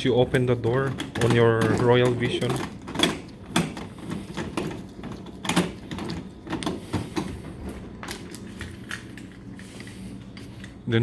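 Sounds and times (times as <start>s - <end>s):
steady low hum: 0.0s - 11.0s
vending machine door clicks and knocks: 0.6s - 7.3s.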